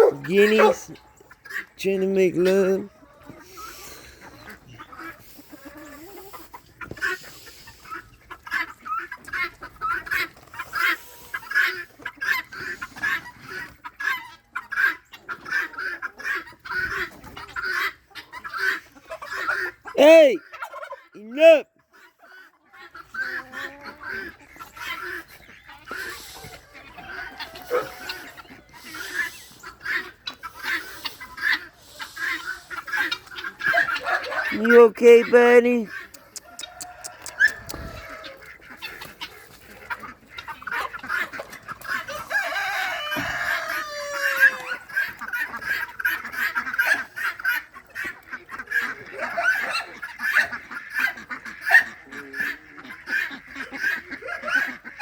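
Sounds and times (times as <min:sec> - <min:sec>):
guinea fowl squawking: 0:00.0 - 0:01.8, 0:02.4 - 0:55.0
poultry calling agitatedly: 0:00.0 - 0:55.0.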